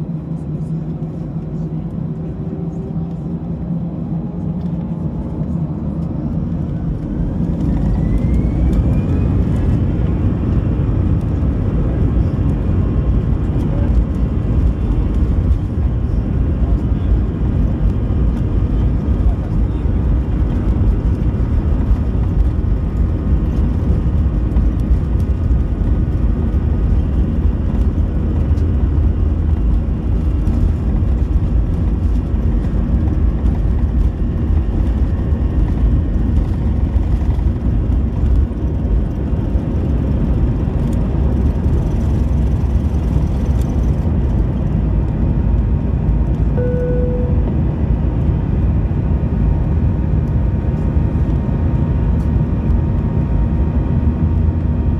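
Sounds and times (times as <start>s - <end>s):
airplane cabin engine rumble: 0.0s - 54.9s
short tone: 46.6s - 47.7s.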